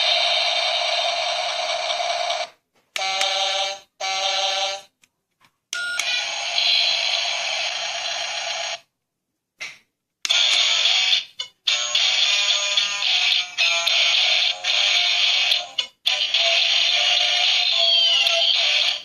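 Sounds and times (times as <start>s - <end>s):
buzzy electronic toy effect: 10.3s - 19.0s.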